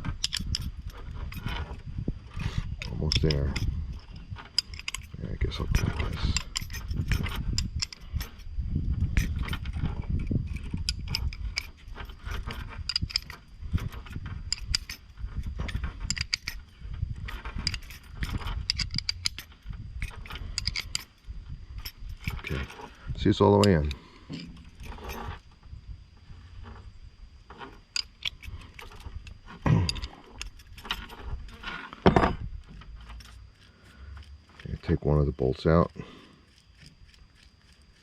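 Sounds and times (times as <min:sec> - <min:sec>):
metal clicks and clinks: 0:00.0 - 0:01.8, 0:02.4 - 0:08.5, 0:09.1 - 0:25.4, 0:27.6 - 0:33.4
wrench tightening bolts: 0:00.0 - 0:01.8, 0:02.4 - 0:08.5, 0:09.1 - 0:21.2, 0:21.8 - 0:25.3, 0:27.6 - 0:32.4
metal tool handling noise: 0:00.0 - 0:08.5, 0:09.1 - 0:25.4, 0:27.5 - 0:33.4.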